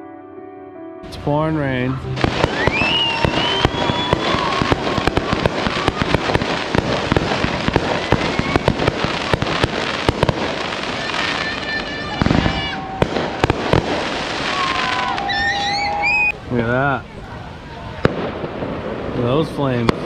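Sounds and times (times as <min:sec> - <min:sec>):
heavy rain pelting: 0:01.1 - 0:18.0
faint whistle-like tone: 0:02.5 - 0:04.4, 0:15.3 - 0:16.3.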